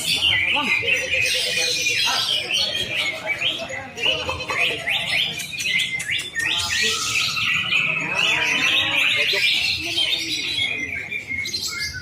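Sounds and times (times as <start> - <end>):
other birdsong: 0.0 - 12.0
bird chirping and whistling: 4.7 - 12.0.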